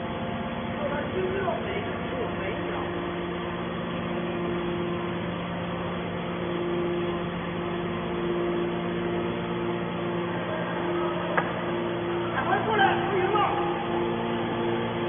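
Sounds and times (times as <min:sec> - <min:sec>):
hydraulic baler humming: 0:00.0 - 0:15.0.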